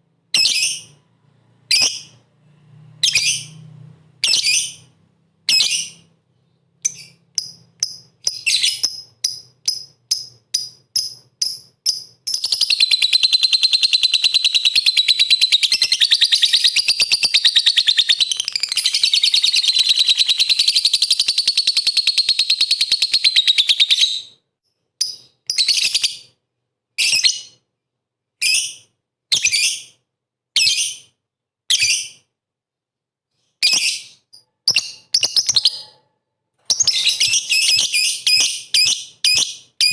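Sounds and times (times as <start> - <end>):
lovebird chirping and chattering: 0.4 - 1.0, 1.7 - 2.2, 3.0 - 3.6, 4.2 - 4.9, 5.5 - 6.1, 6.8 - 24.4, 25.0 - 26.4, 33.6 - 36.0, 36.7 - 39.9.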